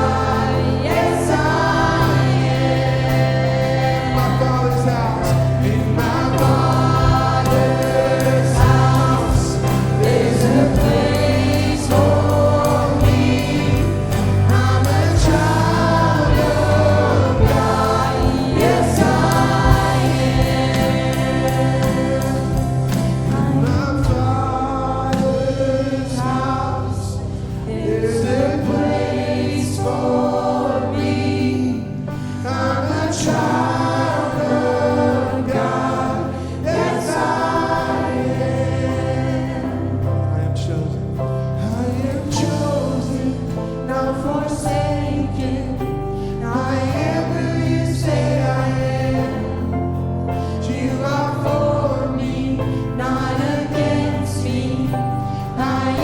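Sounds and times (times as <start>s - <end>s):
band playing: 0.0s - 32.3s
bass line: 0.0s - 56.0s
group singing worship song: 0.0s - 56.0s.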